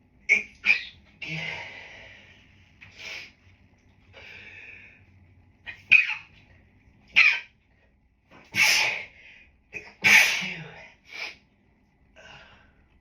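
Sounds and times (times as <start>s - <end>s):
person sneezing: 8.5s - 9.1s, 9.8s - 11.4s.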